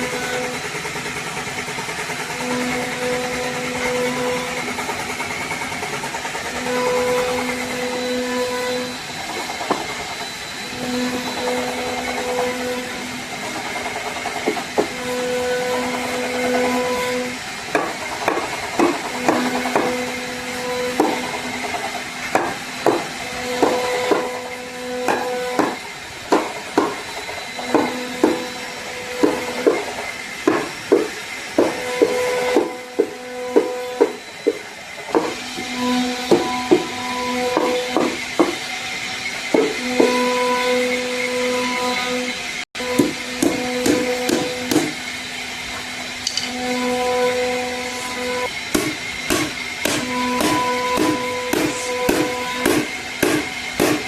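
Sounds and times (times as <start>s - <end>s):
power tool motor humming: 0.0s - 54.0s
sharp knocks on wood: 43.0s - 44.9s, 48.7s - 54.0s.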